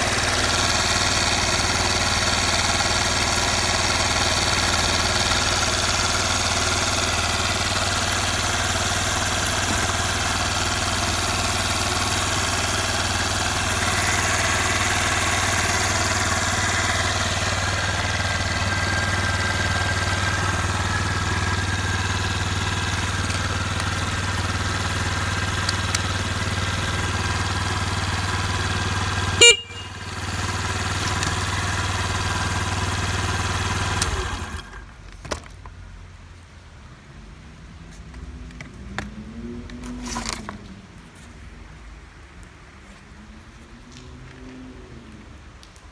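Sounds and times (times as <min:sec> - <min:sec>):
motorcycle engine idling: 0:00.0 - 0:34.9
horn short beep: 0:29.3 - 0:30.3.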